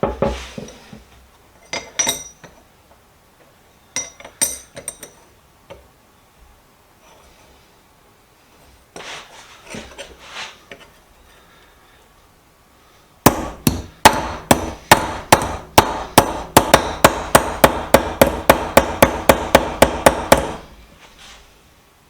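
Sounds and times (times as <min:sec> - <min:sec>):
hammer striking steel on anvil: 0:13.2 - 0:20.7.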